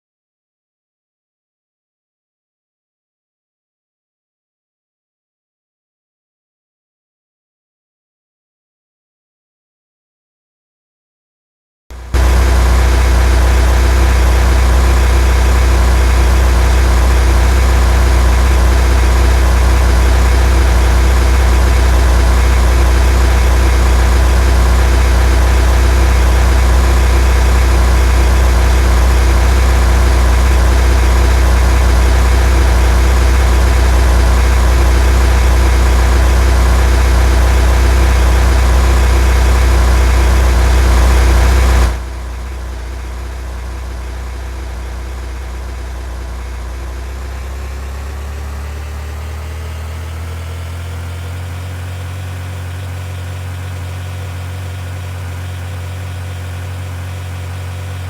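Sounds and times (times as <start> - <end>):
vehicle engine drone: 11.9 - 58.0.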